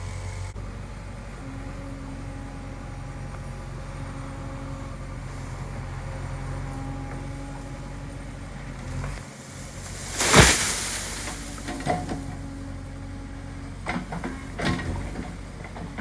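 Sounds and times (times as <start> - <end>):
diesel engine running at low revs: 0.0 - 16.0
loud rushing noise: 9.5 - 11.9.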